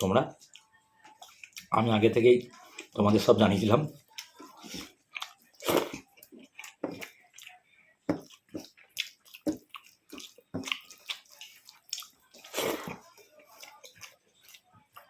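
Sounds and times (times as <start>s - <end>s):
wet chewing and lip smacks: 0.4s - 1.8s, 3.9s - 7.6s, 8.2s - 15.0s.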